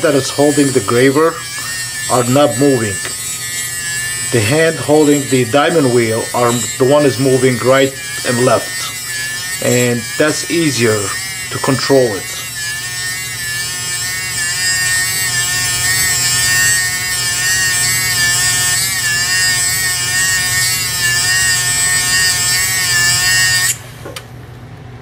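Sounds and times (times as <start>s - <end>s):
wheel grinding steel hiss: 0.0s - 15.4s
electric motor whine: 0.0s - 24.2s.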